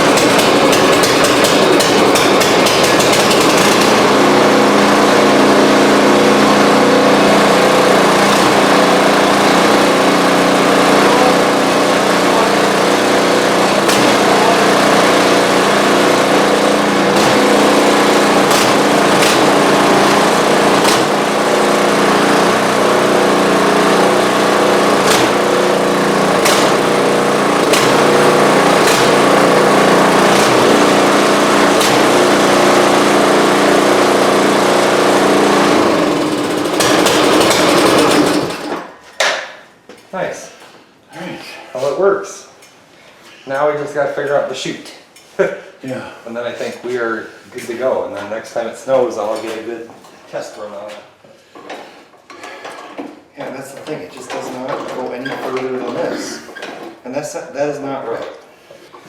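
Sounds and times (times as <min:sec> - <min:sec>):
sharp clicks and knocks: 0:00.0 - 0:04.0
snow blower engine running: 0:00.0 - 0:38.9.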